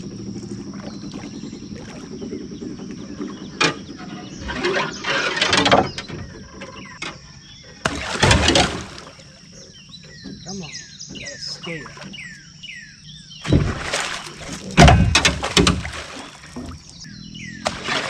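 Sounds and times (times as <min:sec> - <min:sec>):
boat motor humming: 0:00.0 - 0:18.0
fish thrashing and splashing: 0:07.9 - 0:09.2, 0:13.4 - 0:16.9, 0:17.6 - 0:18.0.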